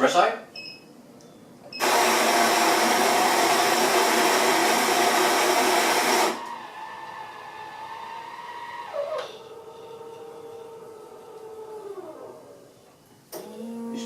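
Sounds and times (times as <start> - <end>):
coffee grinder motor: 1.8 - 6.6
machine hum: 1.8 - 14.0.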